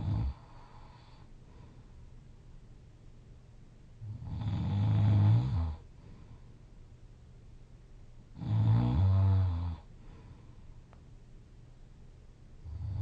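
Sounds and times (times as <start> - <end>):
person snoring loudly: 4.0 - 5.8, 8.4 - 9.8, 12.7 - 13.0.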